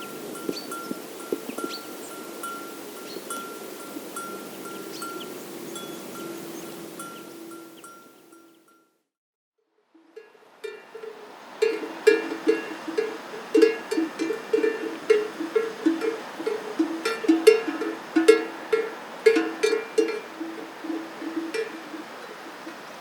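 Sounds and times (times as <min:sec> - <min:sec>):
livestock bells clanking: 0:00.0 - 0:08.9, 0:10.2 - 0:23.0.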